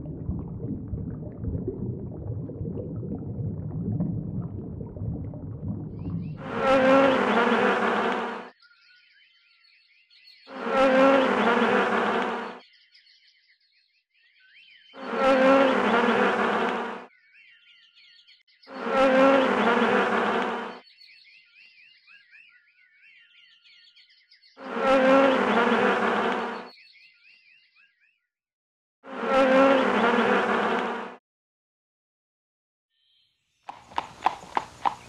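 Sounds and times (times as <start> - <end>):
flying insect buzzing: 6.4 - 8.5, 10.5 - 12.6, 15.0 - 17.0, 18.8 - 20.8
faint high bird-like chirps: 8.4 - 10.8, 12.5 - 15.6, 17.1 - 18.9, 20.8 - 24.7, 26.4 - 28.3, 32.9 - 33.7.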